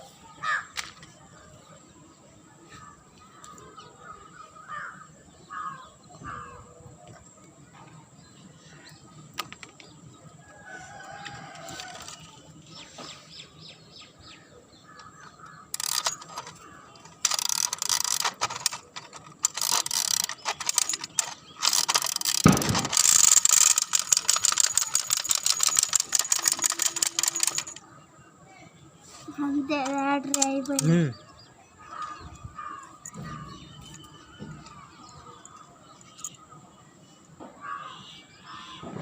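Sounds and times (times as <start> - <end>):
faint bird caws: 0.4 - 0.8, 2.7 - 6.8, 37.5 - 39.0
toy mechanism clicking and rattling: 11.0 - 12.5, 15.4 - 27.8, 29.4 - 31.1.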